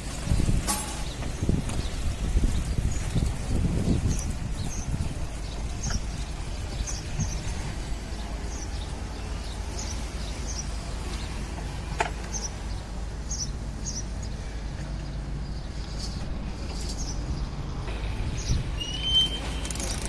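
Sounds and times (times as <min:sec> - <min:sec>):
small birds chirping: 0:01.0 - 0:11.6, 0:12.2 - 0:17.5.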